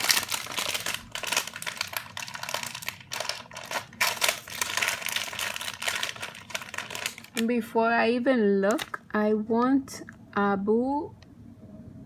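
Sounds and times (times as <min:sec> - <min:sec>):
plastic wrapper crinkling: 0:00.0 - 0:07.6, 0:08.7 - 0:09.0.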